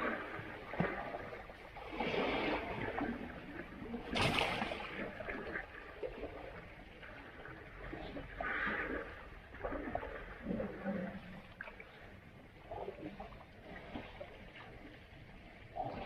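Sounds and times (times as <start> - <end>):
water sloshing and gurgling: 0.0 - 16.0
sharp splash: 4.1 - 5.2.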